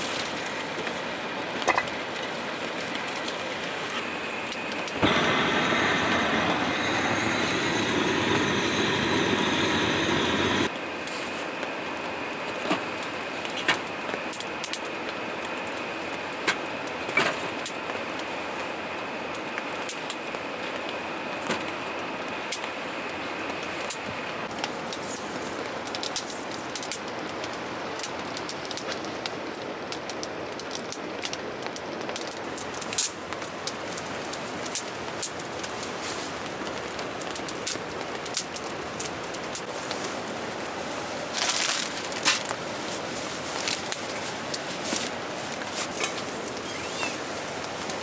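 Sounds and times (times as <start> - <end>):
steady rain falling: 0.0 - 10.7, 24.3 - 48.0
loud rush of noise: 4.9 - 10.7.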